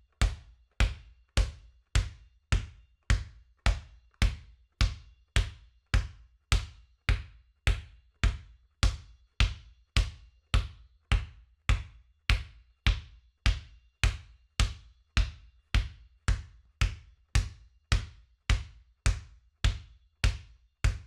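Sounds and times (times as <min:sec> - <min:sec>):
basketball bouncing on hard floor: 0:00.2 - 0:21.0.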